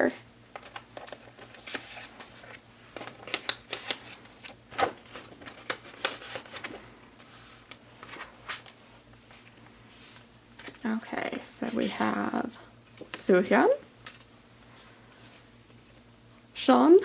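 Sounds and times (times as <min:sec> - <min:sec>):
paper cards flipped by hand: 0:00.6 - 0:08.8.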